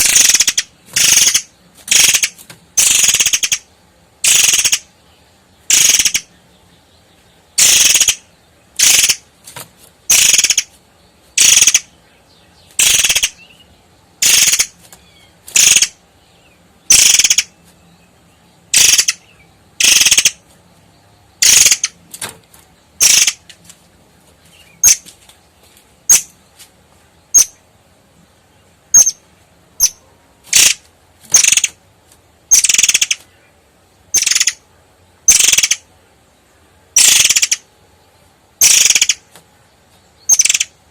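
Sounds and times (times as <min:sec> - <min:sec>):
bird calling in scratchy bursts: 0:00.0 - 0:04.9, 0:05.6 - 0:06.3, 0:07.6 - 0:11.9, 0:12.7 - 0:16.1, 0:16.9 - 0:17.8, 0:18.7 - 0:20.6, 0:21.4 - 0:22.2, 0:23.0 - 0:27.6, 0:28.9 - 0:29.2, 0:29.8 - 0:33.4, 0:34.1 - 0:35.9, 0:37.0 - 0:37.7, 0:38.6 - 0:39.4, 0:40.2 - 0:40.9.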